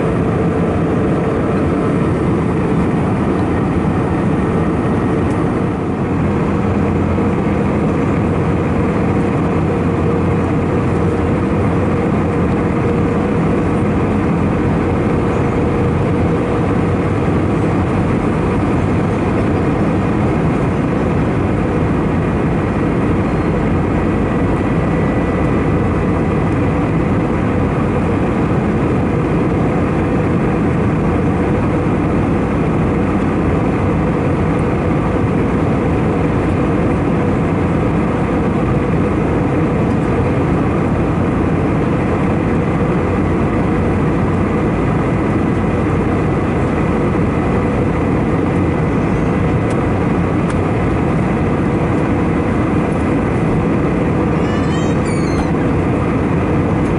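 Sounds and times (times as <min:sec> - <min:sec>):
airflow and engine drone: 0:00.0 - 0:56.9
faint high tone: 0:54.4 - 0:55.5.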